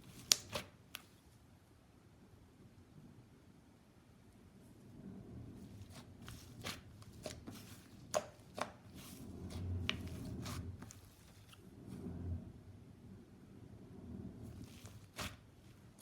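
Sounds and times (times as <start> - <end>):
slime squishing: 0.0 - 1.1, 5.6 - 11.6, 14.5 - 16.0.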